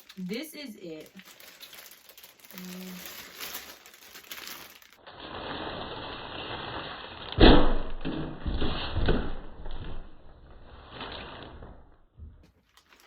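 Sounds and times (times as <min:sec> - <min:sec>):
rustling and handling noise: 0:00.0 - 0:07.4, 0:12.4 - 0:13.0.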